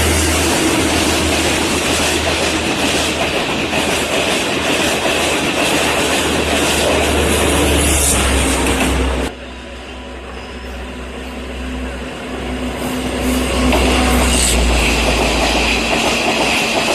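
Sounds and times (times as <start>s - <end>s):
diesel engine hum: 0.0s - 3.2s
train wheels clattering over rail joints: 0.0s - 9.3s, 13.6s - 16.9s.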